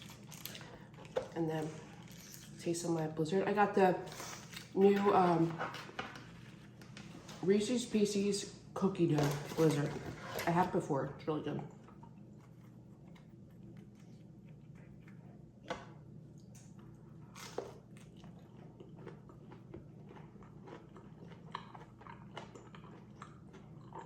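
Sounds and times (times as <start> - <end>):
soft chewing: 11.8 - 24.0.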